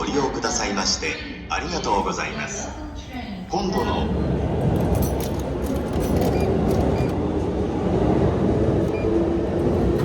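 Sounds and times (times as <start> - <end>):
low hum: 2.0 - 10.0
train wheels running: 2.6 - 10.0.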